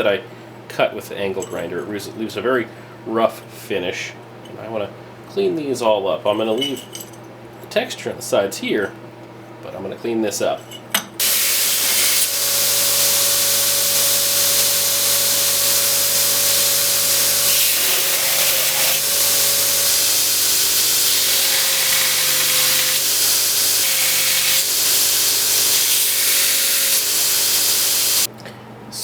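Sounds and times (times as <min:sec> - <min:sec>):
power grinder grinding steel: 0:11.2 - 0:28.3.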